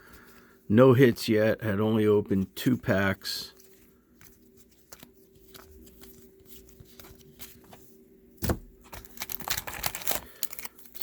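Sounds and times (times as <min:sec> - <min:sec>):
faint steady hum: 0:00.0 - 0:11.0
card packs clicking and tapping: 0:08.8 - 0:11.0.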